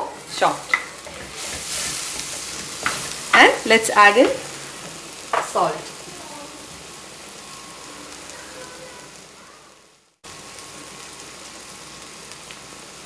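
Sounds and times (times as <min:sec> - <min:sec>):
food sizzling in oil: 0:00.0 - 0:13.0.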